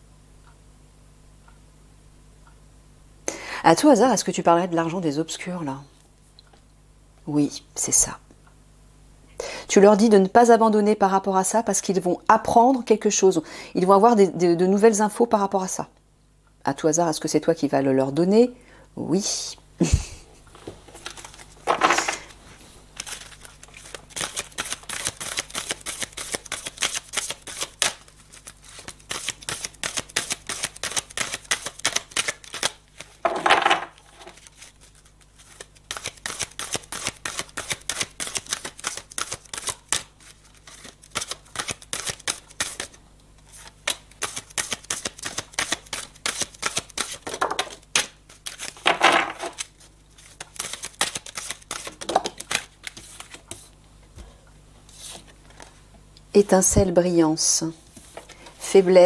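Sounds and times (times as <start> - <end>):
cards being shuffled: 20.6 - 53.8, 54.9 - 55.7.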